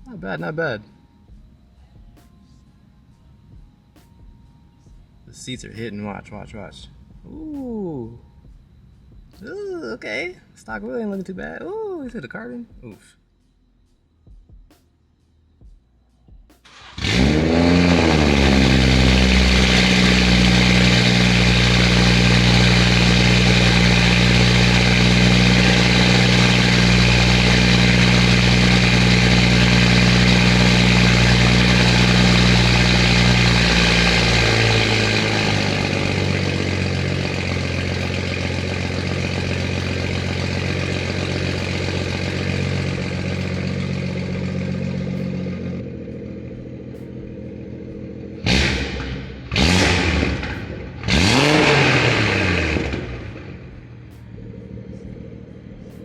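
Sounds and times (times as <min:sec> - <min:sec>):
car engine starting and idling: 0:16.5 - 0:56.0.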